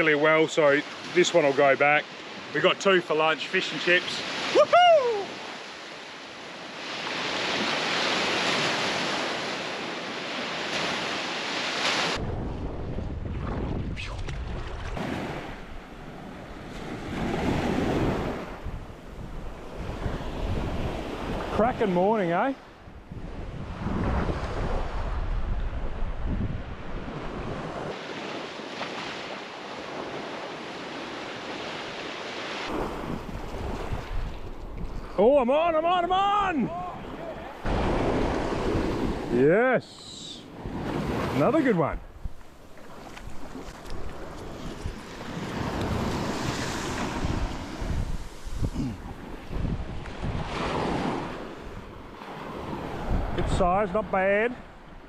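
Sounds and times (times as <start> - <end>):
ocean surf washing on beach: 0.0 - 55.0
wind buffeting the microphone: 12.2 - 21.6, 22.8 - 28.0, 32.7 - 35.2, 40.5 - 53.7.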